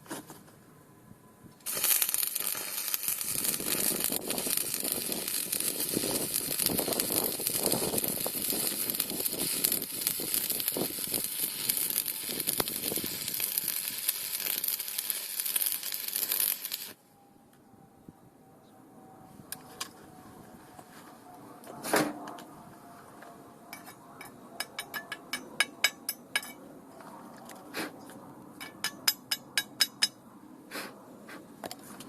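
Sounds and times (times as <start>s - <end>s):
arc welding crackle: 1.6s - 17.0s.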